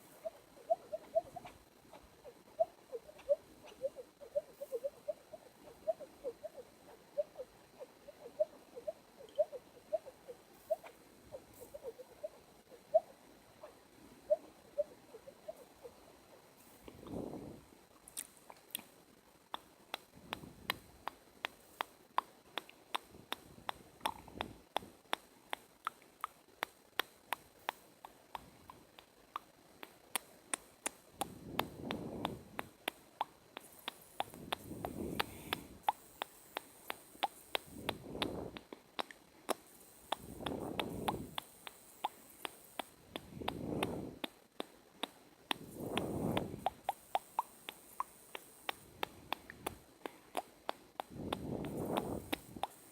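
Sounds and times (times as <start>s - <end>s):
wet tongue and lip clicks: 18.0s - 18.9s, 19.5s - 52.9s.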